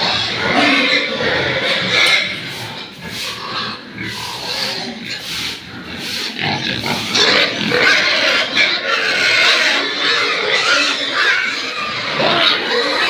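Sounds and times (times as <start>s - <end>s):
pigs calling: 0.0s - 13.0s.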